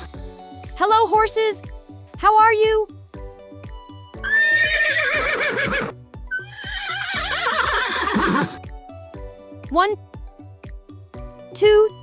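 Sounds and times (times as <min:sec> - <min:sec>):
children's background music: 0:00.0 - 0:04.8, 0:05.9 - 0:12.0
horse whinnies: 0:04.2 - 0:08.6.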